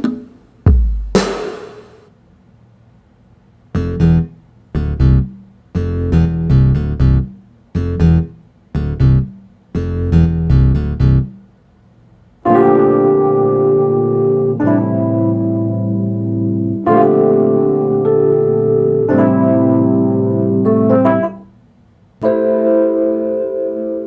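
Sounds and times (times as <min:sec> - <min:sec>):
keyboard chords: 0:00.7 - 0:01.7, 0:04.8 - 0:11.3, 0:12.5 - 0:21.4, 0:22.2 - 0:24.0.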